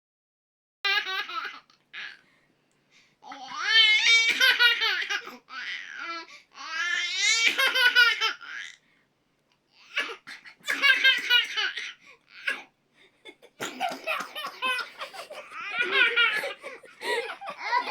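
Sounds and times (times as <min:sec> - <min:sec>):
high-pitched laughter: 0:13.3 - 0:17.9.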